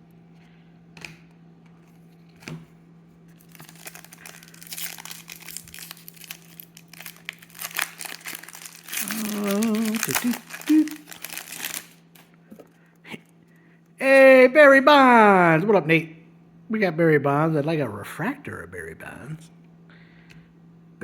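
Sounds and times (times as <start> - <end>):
wrapper tearing and crinkling: 3.3 - 12.2.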